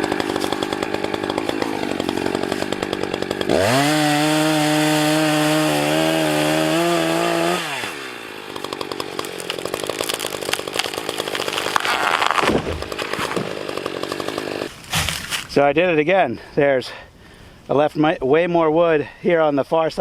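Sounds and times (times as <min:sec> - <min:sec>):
chainsaw revving and idling: 0:00.0 - 0:14.7.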